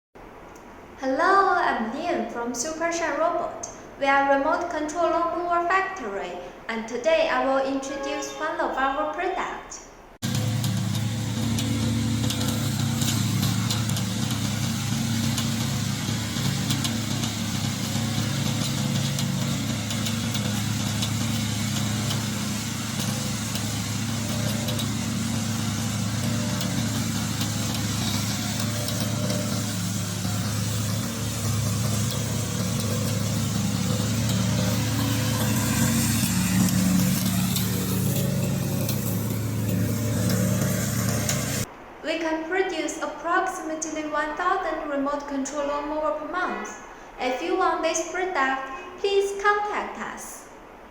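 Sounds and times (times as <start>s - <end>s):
small engine running steadily: 10.2s - 41.7s.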